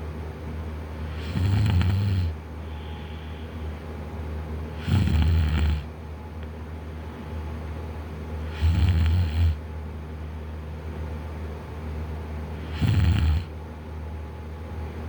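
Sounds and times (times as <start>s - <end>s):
quiet breathing: 0.9s - 3.9s
man snoring: 1.0s - 2.4s, 4.8s - 5.9s, 8.4s - 9.6s, 12.6s - 13.5s.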